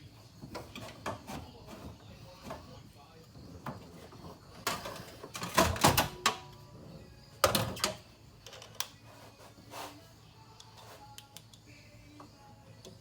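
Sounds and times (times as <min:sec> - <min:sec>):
fan assembly clunks and clatter: 0:00.3 - 0:06.5, 0:07.4 - 0:08.8.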